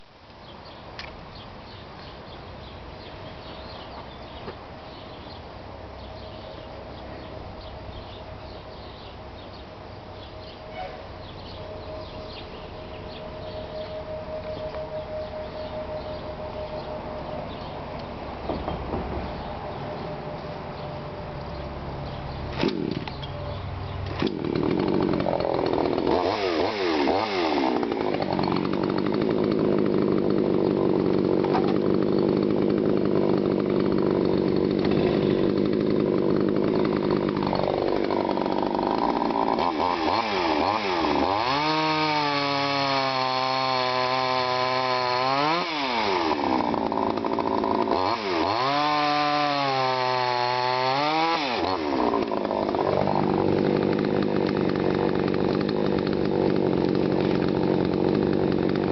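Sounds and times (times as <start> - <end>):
chainsaw cutting wood: 22.3 - 23.4, 24.0 - 58.9.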